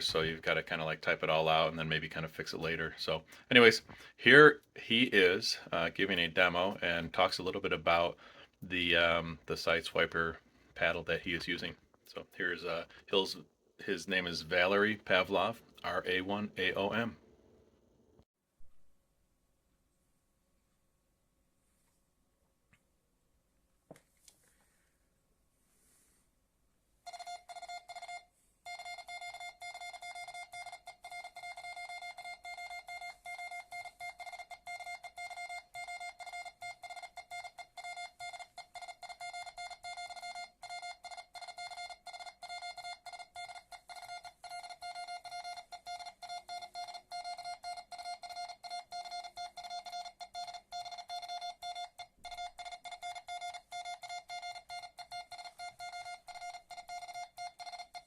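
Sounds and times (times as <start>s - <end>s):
fast morse code beeps: 27.1s - 58.0s.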